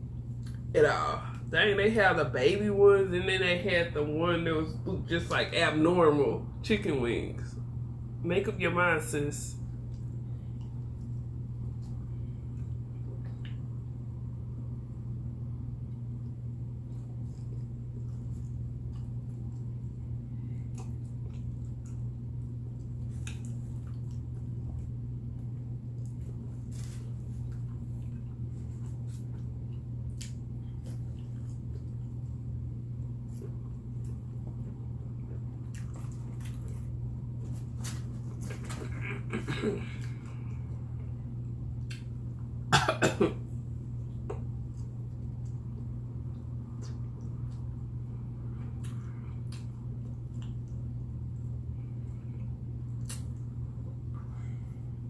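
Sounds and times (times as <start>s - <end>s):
steady low hum: 0.0s - 55.0s
chewing smacks and mouth clicks: 0.2s - 0.7s, 9.7s - 13.9s, 15.8s - 39.0s, 41.6s - 42.6s, 44.0s - 47.8s, 48.6s - 54.3s.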